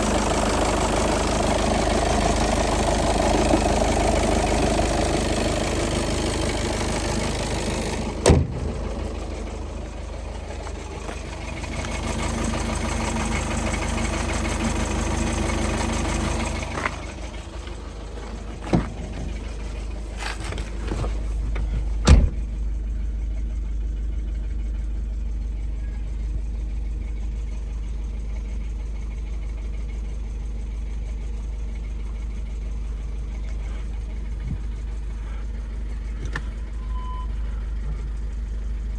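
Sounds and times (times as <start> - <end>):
car engine idling: 0.0 - 38.9
sharp engine knocks: 0.1 - 9.6, 16.2 - 22.6.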